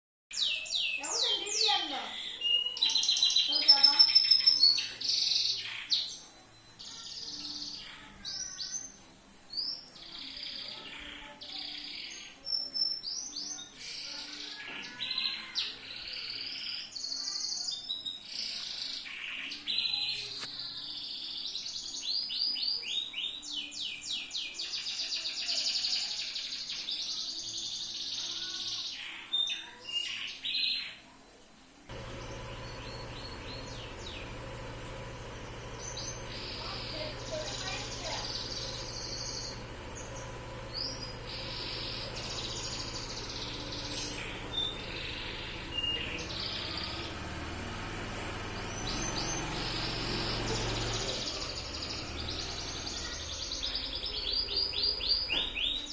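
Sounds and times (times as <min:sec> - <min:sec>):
canary singing trills: 0:00.3 - 0:31.0, 0:31.9 - 0:55.9
steady low hum: 0:31.9 - 0:55.2.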